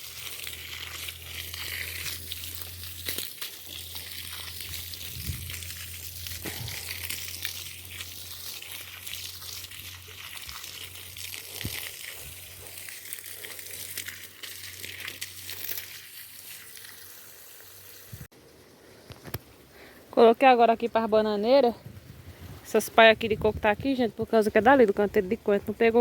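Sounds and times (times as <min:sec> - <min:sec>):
water pouring from hose: 0:00.0 - 0:18.3.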